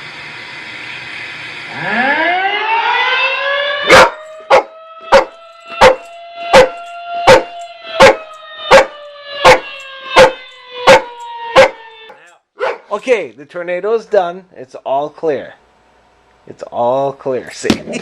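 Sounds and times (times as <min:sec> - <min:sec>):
tornado siren wailing: 0:00.0 - 0:12.2
dog barking: 0:03.9 - 0:11.8, 0:12.6 - 0:12.9.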